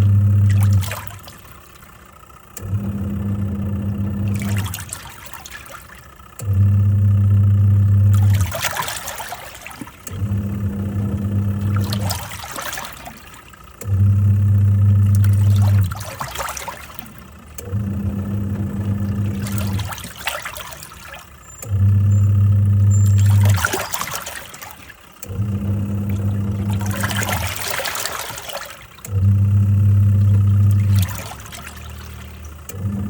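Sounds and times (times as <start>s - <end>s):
water and clothes sloshing: 0.0s - 2.0s, 2.7s - 6.8s, 7.9s - 33.0s
washing machine motor humming: 0.0s - 33.0s.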